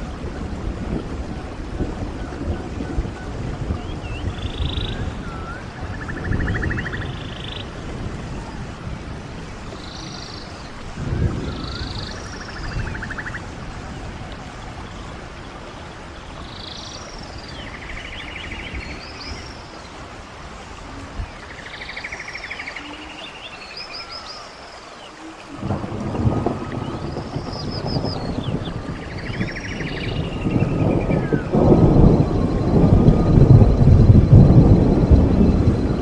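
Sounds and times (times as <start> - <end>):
running stream water: 0.0 - 36.0
birds trilling and whistling: 3.8 - 7.7, 9.7 - 13.4.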